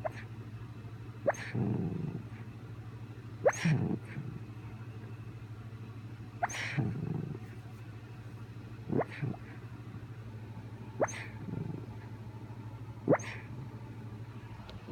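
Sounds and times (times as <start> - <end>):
steady low hum: 0.0 - 14.9
puppy squeaking: 6.4 - 6.8, 11.0 - 11.4.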